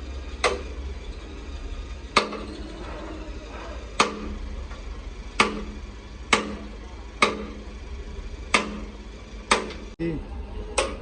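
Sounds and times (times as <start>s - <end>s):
hammer striking metal: 0.4s - 0.7s, 2.1s - 2.6s, 3.5s - 4.4s, 5.4s - 7.6s, 8.5s - 9.9s.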